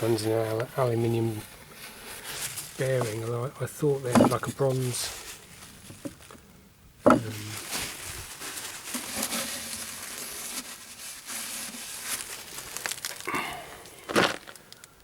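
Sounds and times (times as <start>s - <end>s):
rustling: 0.0s - 15.0s
parts clicking and knocking: 4.1s - 4.6s, 7.0s - 7.3s.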